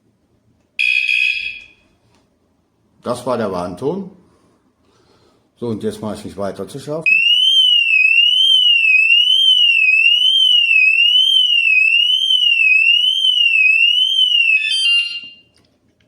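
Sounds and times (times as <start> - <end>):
electronic alarm siren: 0.8 - 1.9, 7.1 - 15.5.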